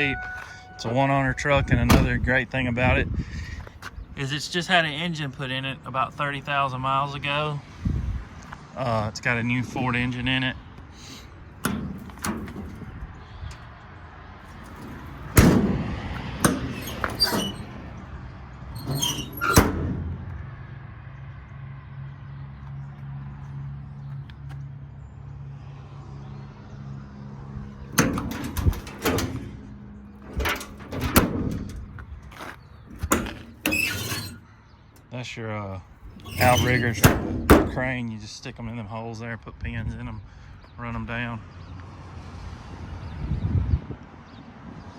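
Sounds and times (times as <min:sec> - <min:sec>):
metal clanks and knocks: 0:11.6 - 0:13.6, 0:14.5 - 0:18.1, 0:18.8 - 0:20.5, 0:28.0 - 0:34.4, 0:36.1 - 0:37.9.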